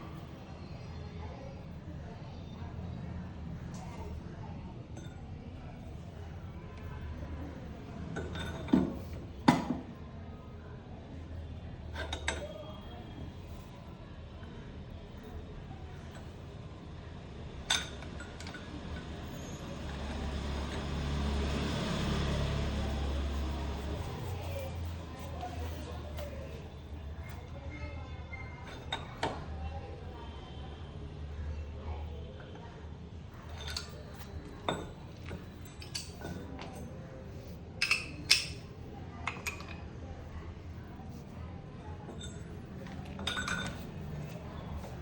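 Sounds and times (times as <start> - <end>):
metal tools clinking: 33.5 - 36.8, 43.2 - 44.9.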